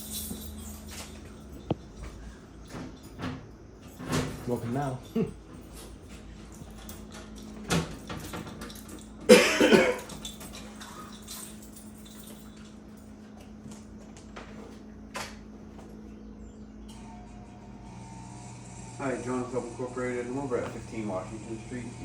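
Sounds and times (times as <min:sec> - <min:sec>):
steady low hum: 0:00.0 - 0:22.0
person coughing: 0:09.3 - 0:10.1.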